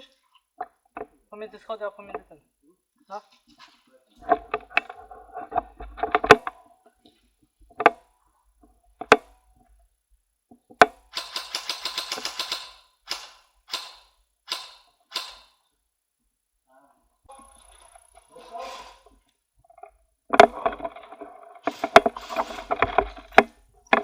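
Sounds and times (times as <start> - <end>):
airsoft guns firing: 10.9 - 15.6.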